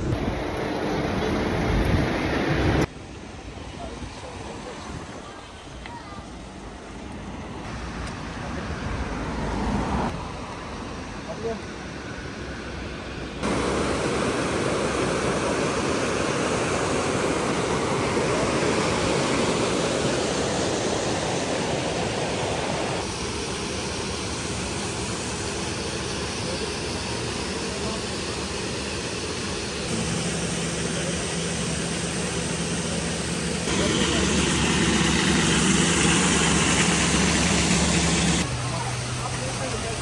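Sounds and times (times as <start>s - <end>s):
waterfall rushing: 13.4s - 40.0s.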